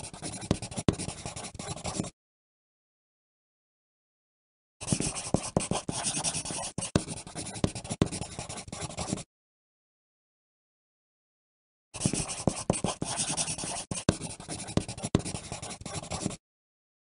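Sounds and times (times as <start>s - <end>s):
pencil writing on paper: 0.0s - 2.2s, 4.8s - 9.3s, 12.0s - 16.4s.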